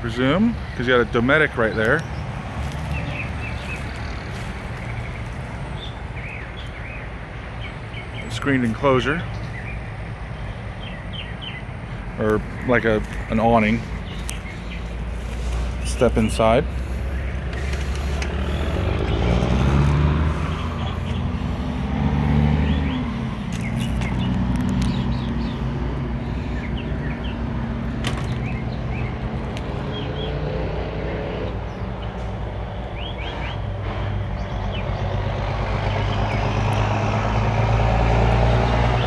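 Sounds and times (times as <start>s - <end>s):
large engine humming: 0.0s - 39.0s.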